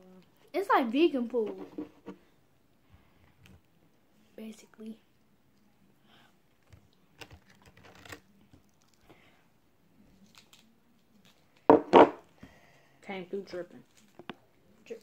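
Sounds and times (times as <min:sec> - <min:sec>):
food and wrapping rustling: 0:06.5 - 0:09.4, 0:10.0 - 0:11.8, 0:13.5 - 0:15.0.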